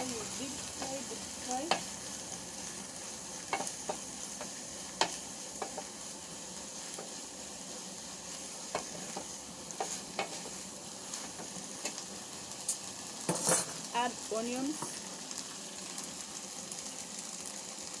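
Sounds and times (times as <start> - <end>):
utensil tapping pan: 0.0 - 1.9, 3.4 - 6.0, 8.6 - 12.0
fish deep frying in oil: 0.0 - 18.0.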